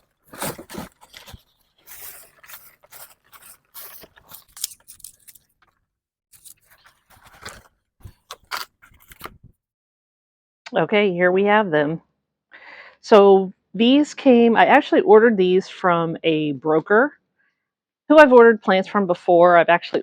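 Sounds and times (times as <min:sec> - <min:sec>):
cardboard box being opened: 0:00.0 - 0:05.4, 0:06.4 - 0:09.5.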